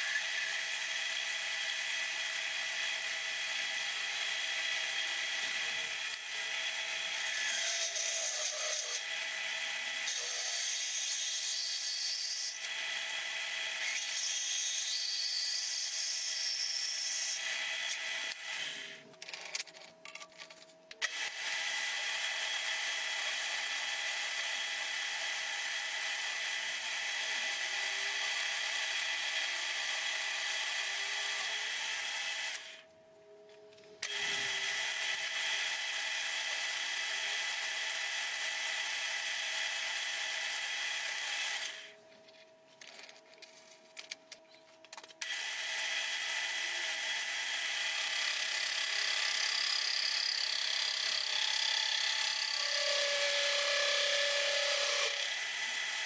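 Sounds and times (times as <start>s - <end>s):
electric power tool whining: 45.2s - 56.0s.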